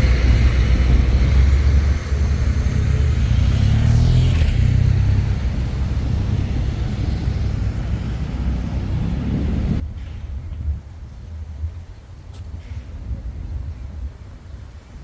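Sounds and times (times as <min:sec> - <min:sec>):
vehicle passing: 0:00.0 - 0:09.8
city road traffic rumbling: 0:00.0 - 0:14.9.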